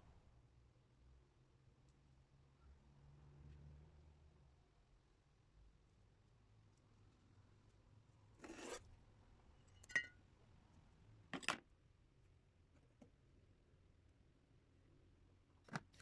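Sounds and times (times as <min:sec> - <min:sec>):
short scrapes: 0:08.4 - 0:08.9.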